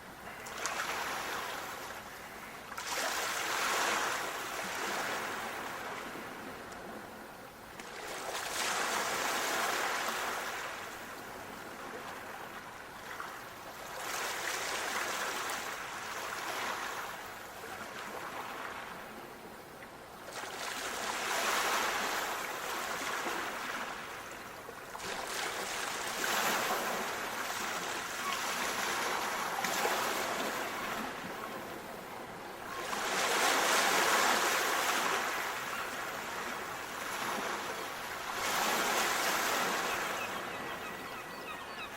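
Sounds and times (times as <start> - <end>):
sea waves washing in: 20.4 - 40.3.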